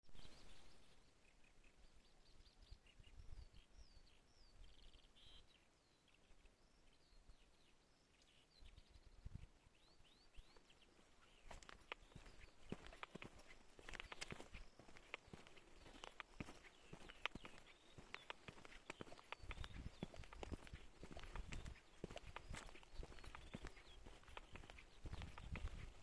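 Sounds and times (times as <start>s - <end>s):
faint birdsong: 0.0s - 26.0s
sharp clicks: 11.6s - 25.8s.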